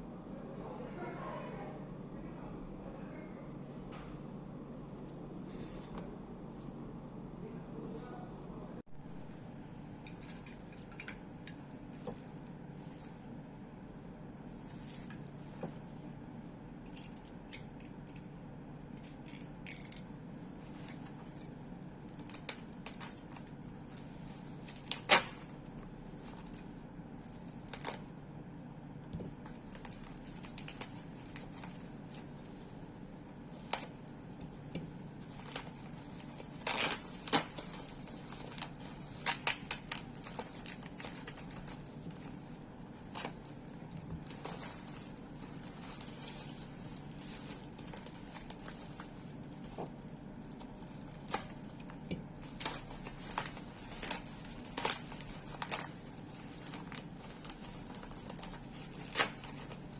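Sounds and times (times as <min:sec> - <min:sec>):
steady low hum: 0:00.0 - 0:59.9
packaging crinkling and tearing: 0:20.6 - 0:28.1, 0:29.4 - 0:59.9.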